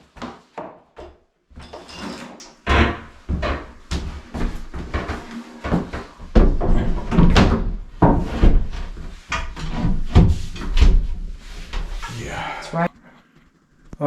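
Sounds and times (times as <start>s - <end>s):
irregular knocks and thumps: 2.6s - 12.1s.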